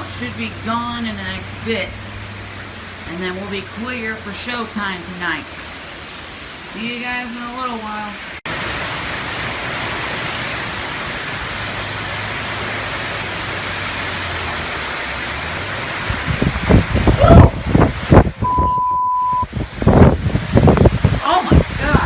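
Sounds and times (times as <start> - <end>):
heavy rain hissing: 0.0 - 22.0
wind gusts buffeting microphone: 15.6 - 22.0
short steady beep: 18.4 - 19.5.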